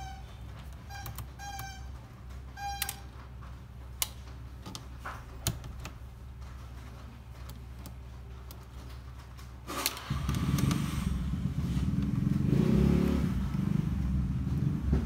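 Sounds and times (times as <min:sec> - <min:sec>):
screws squeaking while turning: 0:00.0 - 0:03.1.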